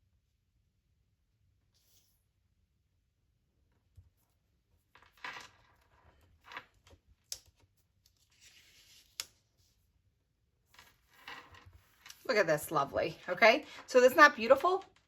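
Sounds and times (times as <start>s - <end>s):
paper rustling and sliding: 7.6s - 9.8s.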